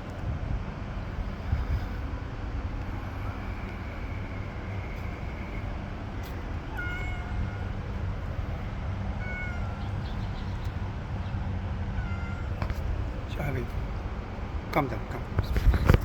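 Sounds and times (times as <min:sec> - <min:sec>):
low background rumble: 0:00.0 - 0:16.0
cat meow: 0:03.2 - 0:10.8, 0:11.8 - 0:13.0.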